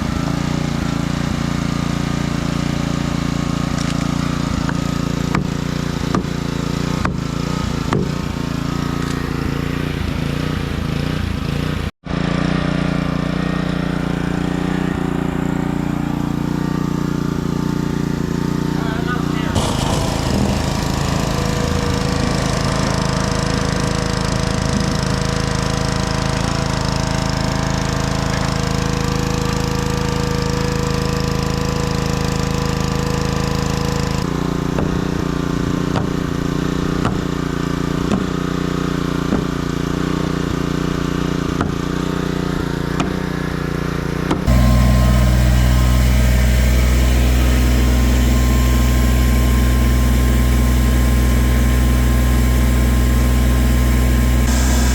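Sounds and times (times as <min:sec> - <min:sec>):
motor engine humming: 0:13.9 - 0:25.8, 0:44.5 - 0:54.9.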